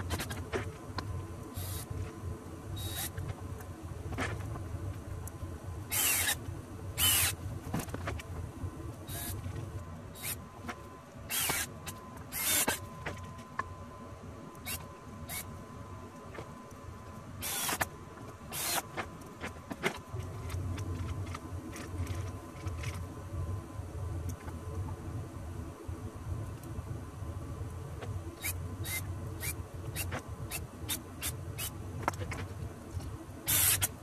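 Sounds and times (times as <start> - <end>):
clicks and knocks of wood and tools: 0.0 - 1.2, 3.0 - 8.4, 10.6 - 13.8, 16.2 - 23.1, 32.0 - 34.0
short noisy bursts: 5.9 - 6.4, 7.0 - 7.4, 11.3 - 11.7, 17.4 - 17.8, 33.5 - 33.9.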